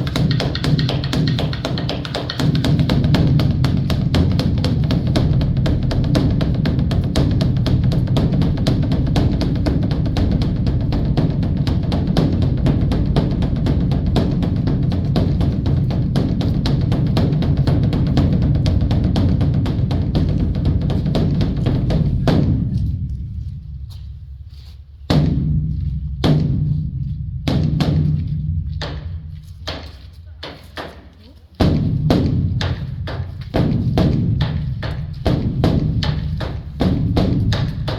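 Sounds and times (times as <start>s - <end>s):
large temple drum beaten: 0.0s - 37.9s.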